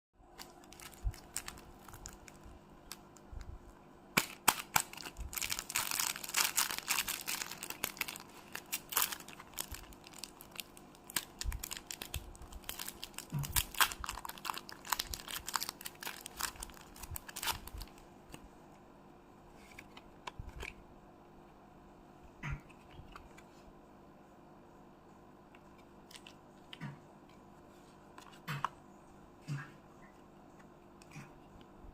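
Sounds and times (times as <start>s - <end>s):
card packaging tearing and crinkling: 0.4s - 3.0s, 4.2s - 18.0s.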